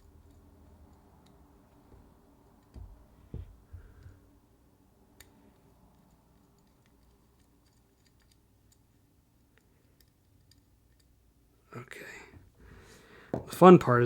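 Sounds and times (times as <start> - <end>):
small metal clicks: 5.2 - 11.3.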